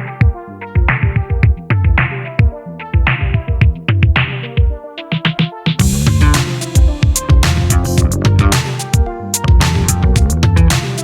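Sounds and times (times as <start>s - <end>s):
kick drum: 0.2s - 4.8s, 5.8s - 10.8s
sustained synth chords: 5.8s - 11.0s.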